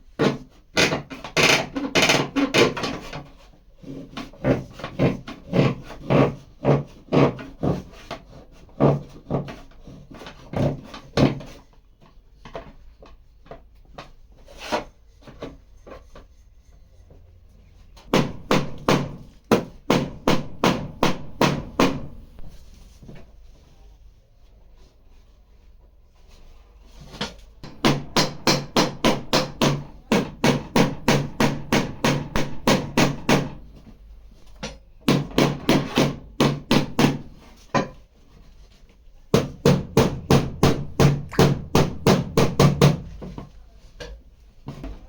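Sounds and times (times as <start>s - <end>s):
hammer tapping on metal panel: 18.1s - 22.5s, 27.6s - 33.8s, 34.6s - 38.0s, 39.4s - 43.3s.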